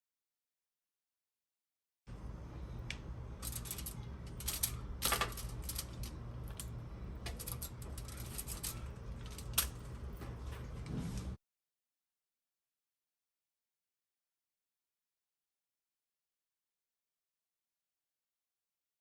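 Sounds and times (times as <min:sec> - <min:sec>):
steady low hum: 0:02.1 - 0:11.4.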